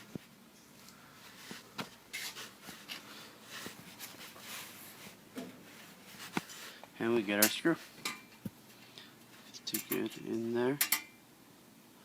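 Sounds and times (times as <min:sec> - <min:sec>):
soft rustles: 0:00.0 - 0:09.7.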